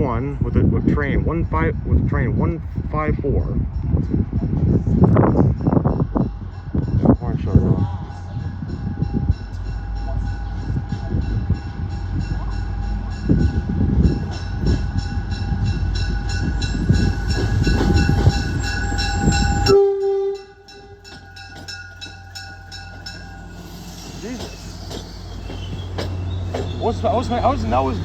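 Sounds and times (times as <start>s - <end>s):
train rumble: 0.0s - 28.0s
locomotive bell ringing: 5.4s - 28.0s
train horn multi-tone blast: 17.0s - 21.4s.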